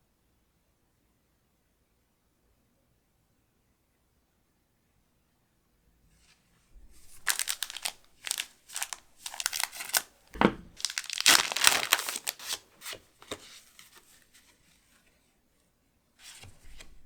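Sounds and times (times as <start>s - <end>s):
foil wrapper crinkling: 7.0s - 10.1s, 10.7s - 13.4s
soft thud: 10.4s - 10.8s.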